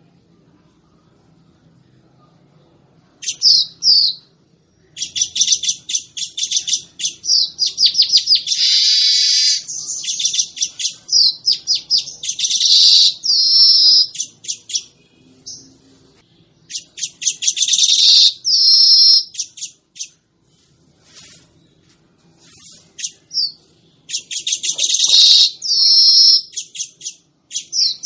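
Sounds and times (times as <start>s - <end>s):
weaver bird singing: 3.2s - 4.3s, 5.0s - 16.0s, 16.6s - 20.1s, 22.4s - 28.0s.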